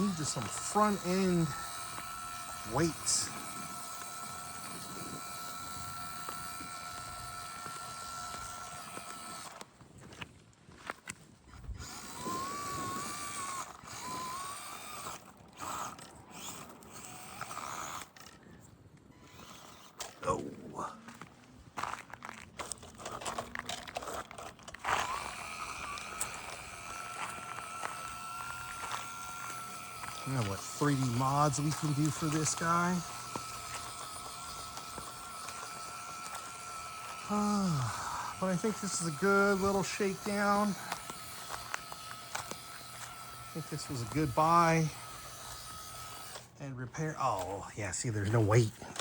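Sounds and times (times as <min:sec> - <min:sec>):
small electric motor whining: 0:00.0 - 0:49.0
tires crunching on stone: 0:20.8 - 0:46.6.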